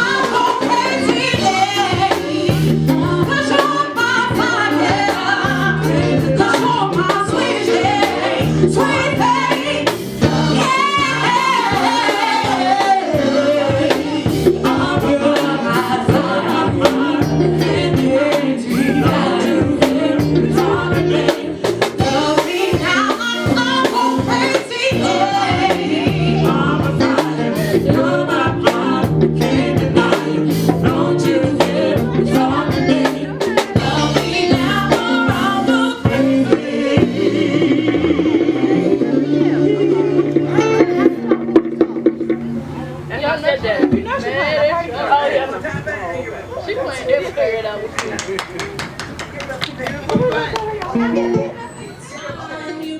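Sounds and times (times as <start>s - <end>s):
person singing: 0.0s - 41.2s
bass notes: 0.0s - 44.5s
guitar: 0.0s - 44.9s, 48.9s - 52.9s
keyboard: 0.0s - 48.0s
drums keeping a steady beat: 0.0s - 52.9s.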